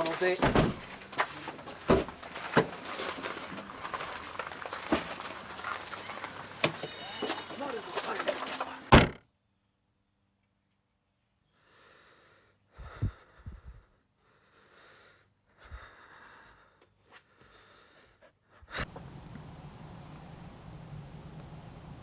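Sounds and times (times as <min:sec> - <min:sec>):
soft knocks: 0:00.0 - 0:09.1
person breathing heavily: 0:11.7 - 0:18.2.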